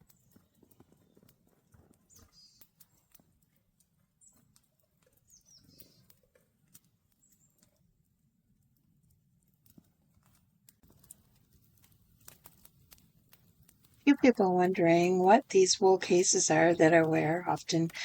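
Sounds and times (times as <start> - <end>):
small birds chirping: 2.1 - 3.2, 5.2 - 6.2, 14.1 - 18.0.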